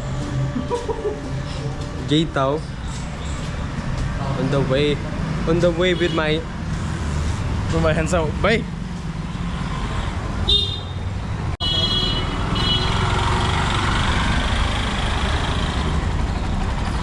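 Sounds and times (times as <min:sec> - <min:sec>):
road traffic rumble: 0:00.0 - 0:17.0
vehicle horns honking: 0:05.6 - 0:06.5, 0:10.4 - 0:13.1.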